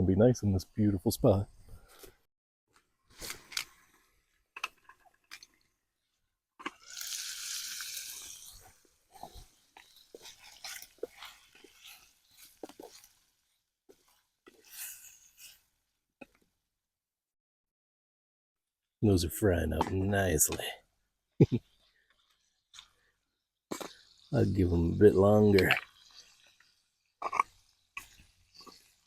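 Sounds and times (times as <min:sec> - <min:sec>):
sausages sizzling in a frying pan: 0:06.8 - 0:13.4, 0:25.6 - 0:29.0.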